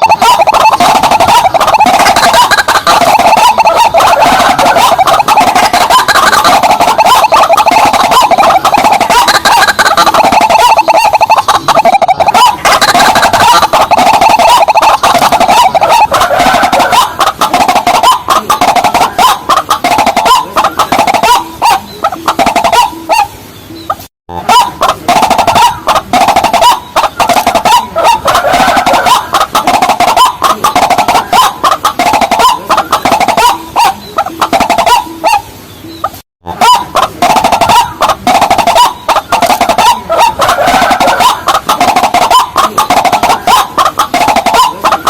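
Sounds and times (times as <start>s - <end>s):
waterbird clucking calls: 0.0s - 45.0s.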